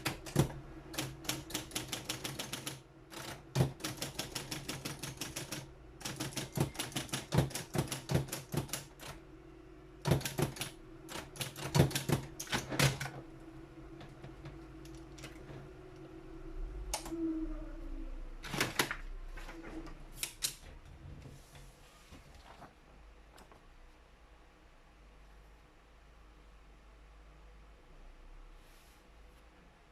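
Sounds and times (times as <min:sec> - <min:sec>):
typewriter keystrokes: 0:00.0 - 0:09.2, 0:10.0 - 0:13.2
typewriter motor hum: 0:00.0 - 0:09.2, 0:10.0 - 0:13.1.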